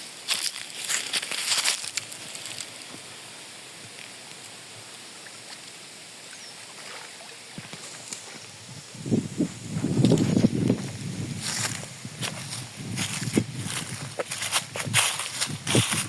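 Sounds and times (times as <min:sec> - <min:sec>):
river water flowing: 0:00.1 - 0:16.0
crackling and rustling: 0:00.3 - 0:03.1, 0:07.6 - 0:16.0.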